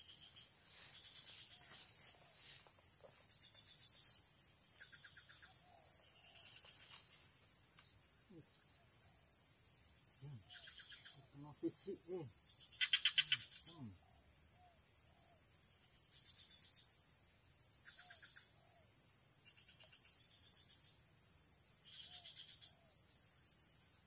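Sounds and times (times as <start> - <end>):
insect chorus: 0.0 - 24.0
rapid chirping trills: 10.2 - 14.0.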